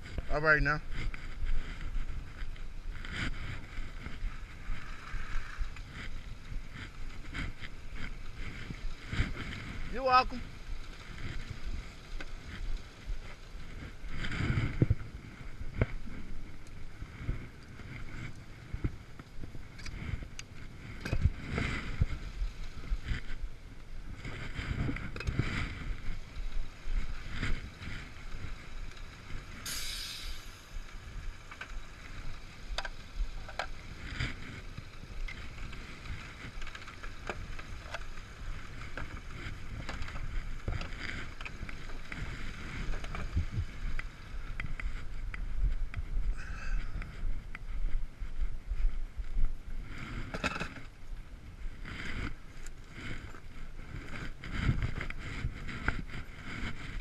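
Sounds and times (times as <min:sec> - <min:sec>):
road and wind noise: 0:00.0 - 0:57.0
vehicle rumble: 0:00.0 - 0:57.0
brief hiss: 0:29.7 - 0:30.6.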